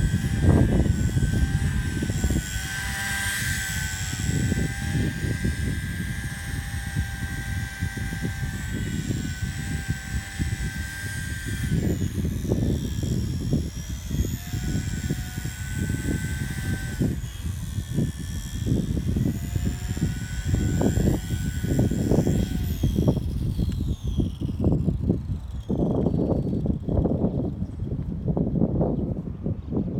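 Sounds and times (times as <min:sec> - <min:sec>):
rc helicopter motor whine: 0:00.0 - 0:29.9
wind rumbling on microphone: 0:00.0 - 0:29.9.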